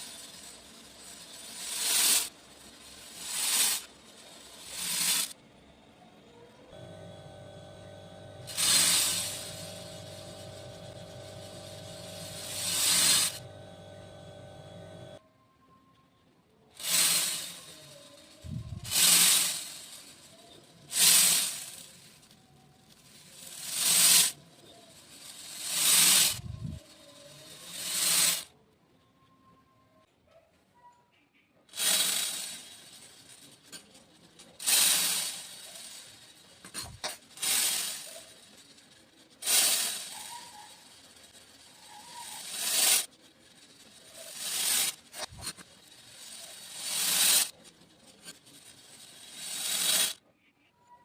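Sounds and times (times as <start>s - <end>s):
small beads being poured: 0.0s - 5.4s, 8.5s - 13.5s, 16.8s - 28.5s, 31.8s - 50.2s.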